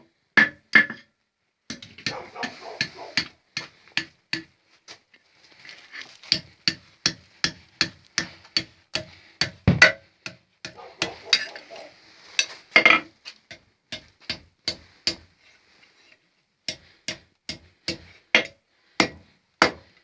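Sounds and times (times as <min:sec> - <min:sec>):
hammer striking anvil: 0:06.3 - 0:11.5, 0:13.5 - 0:15.3, 0:16.7 - 0:20.0.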